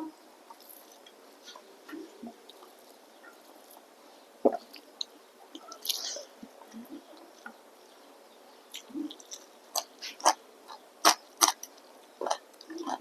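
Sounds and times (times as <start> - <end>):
person chewing: 4.5 - 7.5, 8.7 - 13.0.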